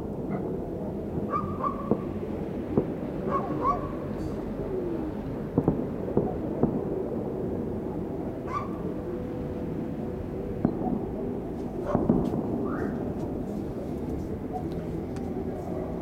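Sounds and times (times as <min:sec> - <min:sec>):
distant fireworks bangs: 0:01.4 - 0:03.6, 0:05.5 - 0:07.1, 0:10.6 - 0:14.3.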